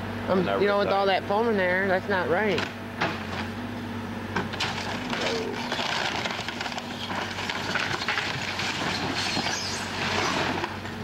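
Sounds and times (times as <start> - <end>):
heavy demolition machinery: 4.3 - 11.0
wood and debris cracking: 4.5 - 11.0.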